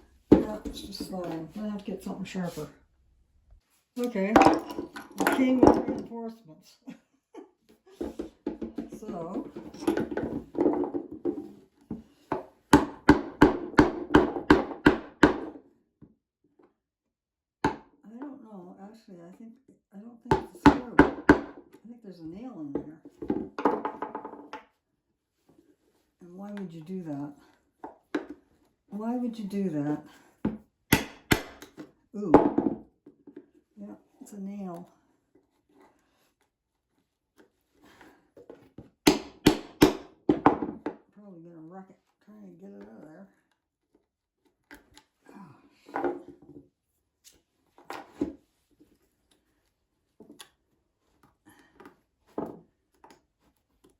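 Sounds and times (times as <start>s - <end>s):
quiet handling: 0.0s - 2.7s
hammer tapping on wood: 30.5s - 31.7s, 39.1s - 40.8s.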